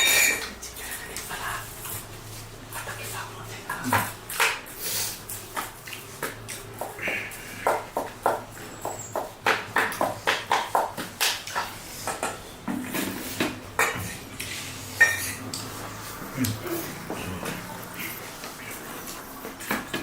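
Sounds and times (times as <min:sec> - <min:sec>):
tableware clink: 0:00.0 - 0:00.5, 0:15.0 - 0:15.5
soft mouth eating sounds: 0:02.8 - 0:07.6, 0:15.5 - 0:19.3.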